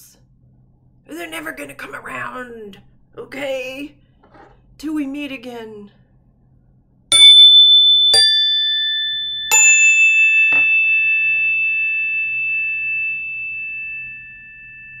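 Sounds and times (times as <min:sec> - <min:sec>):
bell-like chime tones: 0:07.1 - 0:15.0.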